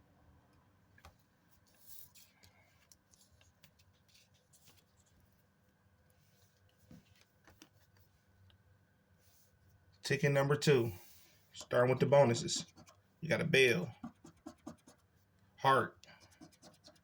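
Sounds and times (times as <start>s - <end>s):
paper ticks and scraping: 1.0s - 5.3s, 11.6s - 13.0s, 13.9s - 15.1s, 16.2s - 17.0s.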